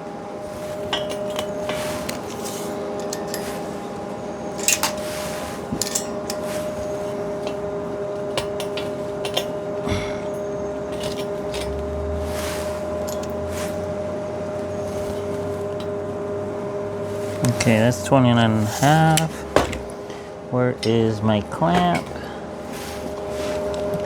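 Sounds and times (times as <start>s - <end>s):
steady two-note hum: 0.0s - 24.0s
metallic clinks and clicks: 0.7s - 13.8s.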